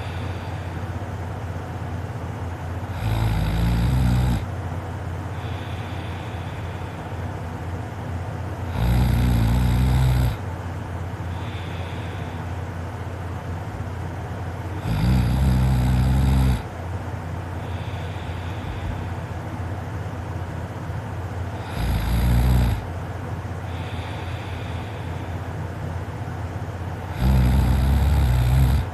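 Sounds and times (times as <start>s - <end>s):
quiet breaths: 0.0s - 28.9s
person snoring: 2.9s - 4.5s, 8.6s - 10.4s, 14.8s - 16.7s, 21.6s - 22.9s, 27.0s - 28.9s.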